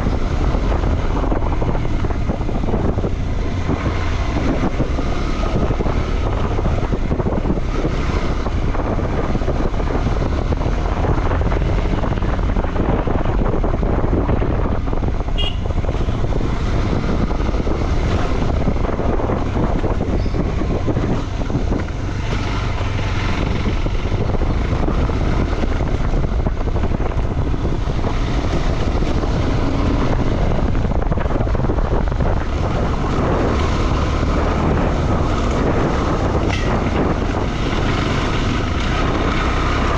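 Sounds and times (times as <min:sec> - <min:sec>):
motorcycle engine running: 0:00.0 - 0:39.9
wind buffeting microphone: 0:00.0 - 0:39.9.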